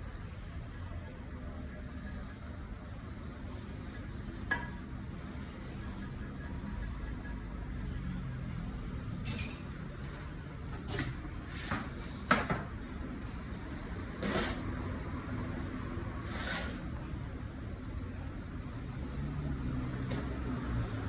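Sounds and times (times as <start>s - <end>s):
knocks and clatters of tools: 8.4s - 12.9s.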